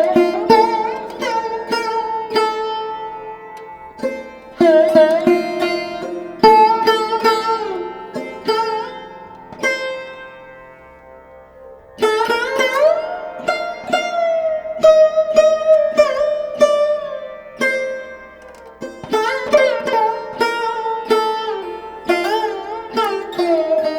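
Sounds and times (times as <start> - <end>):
plucked string instrument music: 0.0 - 23.9.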